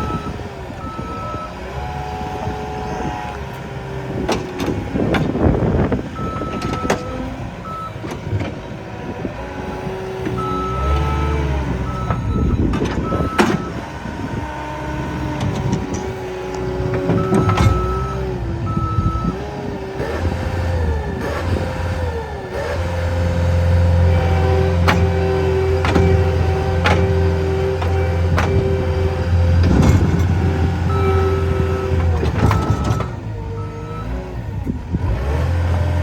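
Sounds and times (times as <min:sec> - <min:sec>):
diesel engine working: 0:00.0 - 0:36.0
knocks and clanks: 0:04.2 - 0:05.7, 0:08.0 - 0:08.8, 0:11.7 - 0:13.8, 0:15.3 - 0:18.8, 0:22.6 - 0:33.3
back-up alarm beeping: 0:11.9 - 0:13.8, 0:17.2 - 0:19.4.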